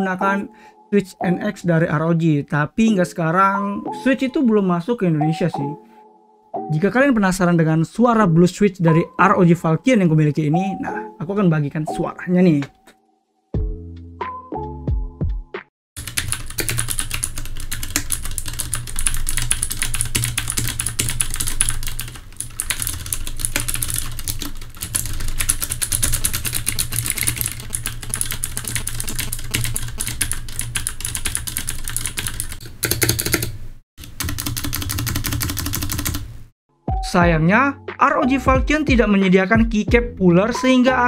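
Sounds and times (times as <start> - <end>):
clicky mechanical keyboard typing: 16.0 - 36.3.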